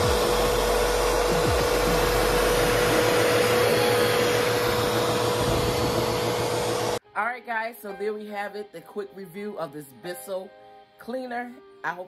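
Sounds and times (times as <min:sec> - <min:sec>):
vacuum cleaner running: 0:00.0 - 0:07.0.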